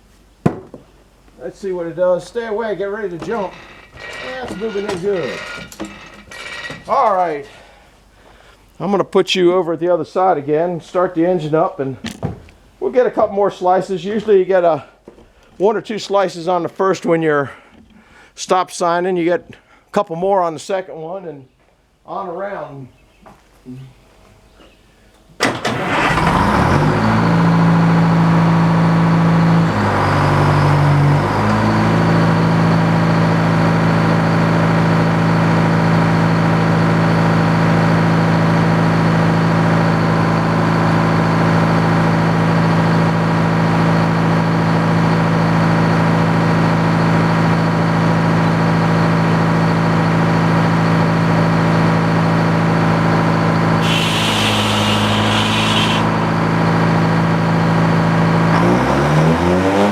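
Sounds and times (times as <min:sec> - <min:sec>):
sawmill engine running: 0:01.9 - 0:07.1, 0:25.6 - 0:59.9.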